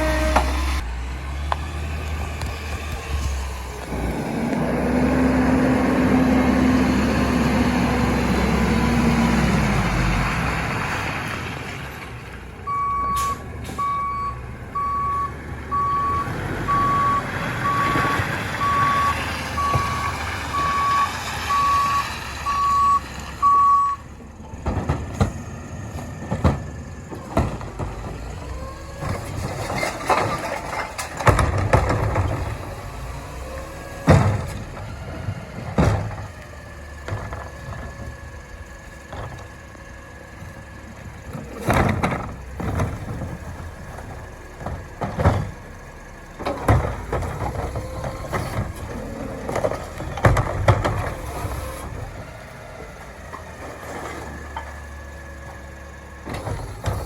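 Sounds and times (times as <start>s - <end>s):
truck engine running: 0.0s - 57.0s
truck backup alarm beeping: 12.6s - 24.2s.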